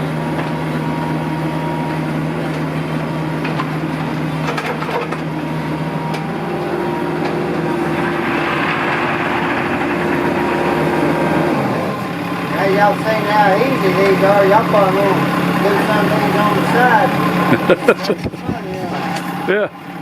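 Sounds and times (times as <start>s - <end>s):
large engine running: 0.0s - 20.0s
sharp knocks and clatters: 4.4s - 5.4s, 7.1s - 12.6s.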